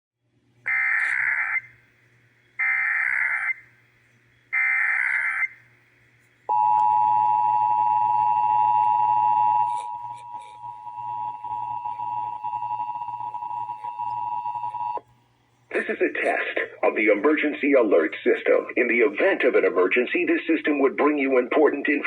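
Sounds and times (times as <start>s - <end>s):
two-tone attention signal: 6.5s - 15.0s.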